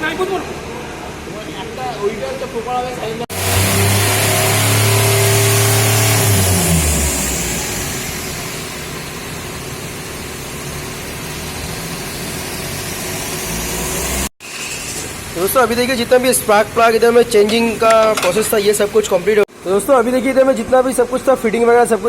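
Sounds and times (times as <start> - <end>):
vehicle engine running: 3.3 - 14.3.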